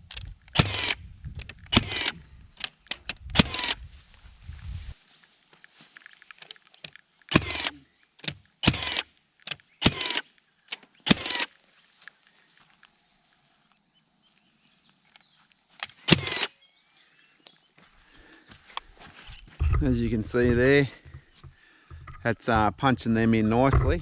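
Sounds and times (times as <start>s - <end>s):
stapler firing into wood: 0.1s - 3.8s, 7.3s - 11.5s, 15.8s - 16.5s.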